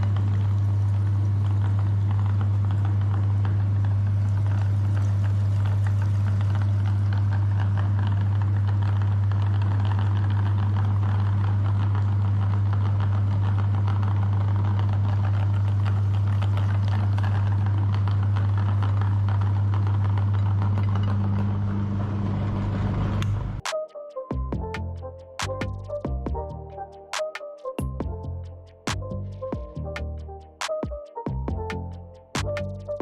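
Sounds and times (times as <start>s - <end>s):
meat grinder motor humming: 0.0s - 23.6s.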